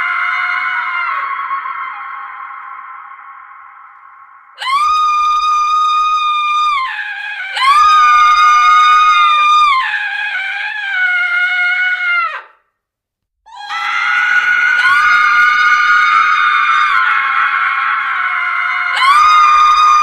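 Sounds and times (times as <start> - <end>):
women screaming: 0.0 - 3.7, 4.6 - 12.5, 13.5 - 20.0.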